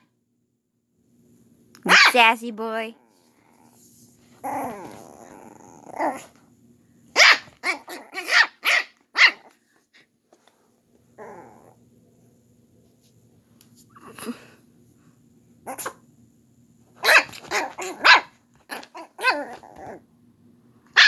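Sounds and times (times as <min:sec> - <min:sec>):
small dog barking: 0:01.8 - 0:02.2, 0:07.1 - 0:09.6, 0:15.6 - 0:16.0, 0:17.0 - 0:20.0
small dog growling: 0:04.4 - 0:06.5, 0:07.6 - 0:08.5, 0:11.2 - 0:11.9, 0:15.7 - 0:16.0, 0:17.4 - 0:20.1.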